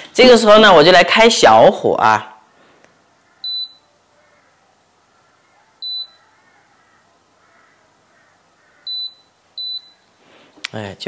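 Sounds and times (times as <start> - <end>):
short high beeps: 3.4 - 3.9, 5.8 - 6.2, 8.9 - 10.0.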